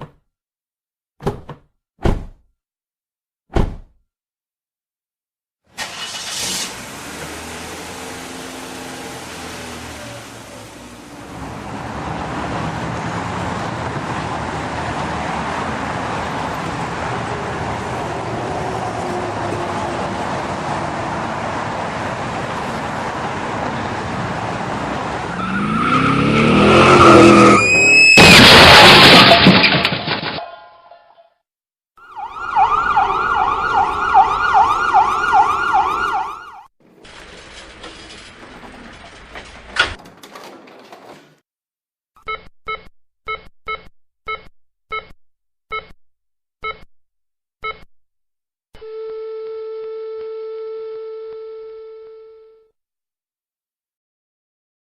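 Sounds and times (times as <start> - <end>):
car driving: 5.8 - 29.4
emergency siren wailing: 25.3 - 28.2, 32.0 - 36.7
car crash with breaking debris: 27.1 - 31.0.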